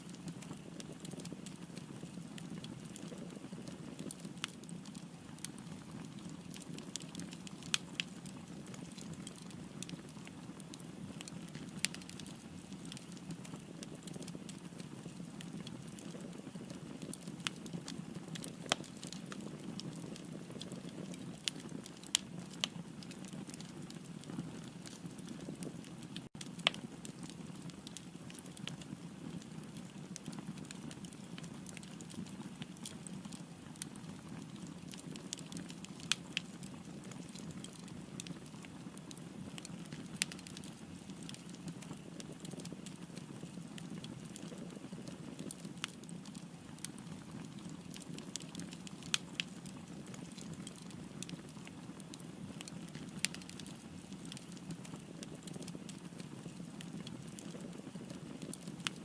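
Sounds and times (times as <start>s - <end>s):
wood fire crackling: 0.0s - 59.0s
fire pops: 11.1s - 46.2s, 52.5s - 59.0s.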